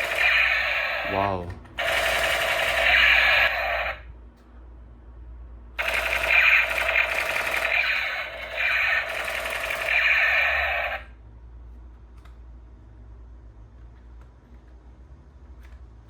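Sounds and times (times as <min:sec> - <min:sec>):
toy gun electronic firing effect: 0:00.0 - 0:04.0, 0:05.8 - 0:11.1.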